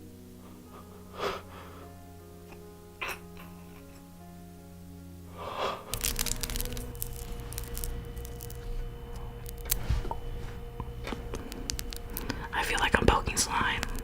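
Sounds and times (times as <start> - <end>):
background music: 0.0 - 14.0
low hum: 0.0 - 14.0
food crackling and clicking: 5.4 - 14.0.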